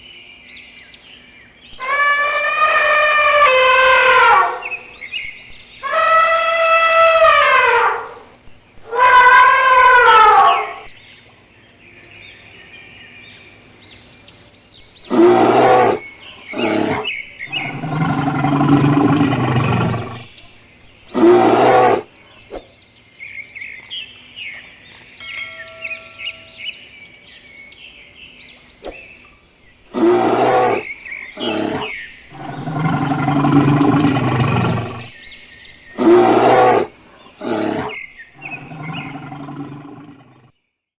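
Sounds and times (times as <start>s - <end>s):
birds chirping: 0.0s - 40.7s
big cat roaring and growling: 15.1s - 20.3s, 21.1s - 22.1s, 29.9s - 35.2s, 35.9s - 40.5s.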